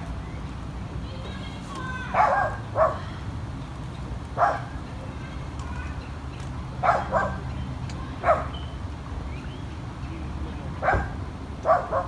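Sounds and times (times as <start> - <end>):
dog barking: 2.2 - 3.1, 4.4 - 4.7, 6.8 - 7.4, 8.2 - 8.6, 10.8 - 12.0.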